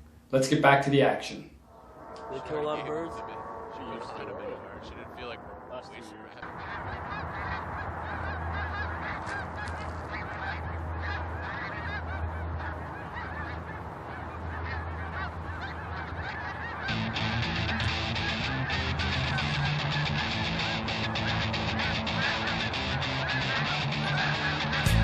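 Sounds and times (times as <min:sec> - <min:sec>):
geese honking: 0:01.7 - 0:25.0
guitar music: 0:16.9 - 0:25.0.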